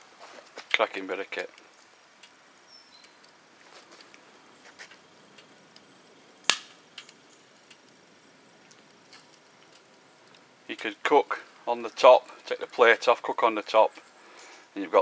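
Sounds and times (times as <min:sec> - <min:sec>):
wood fire crackling: 0:00.0 - 0:15.0
loud sharp pop: 0:06.5 - 0:06.8.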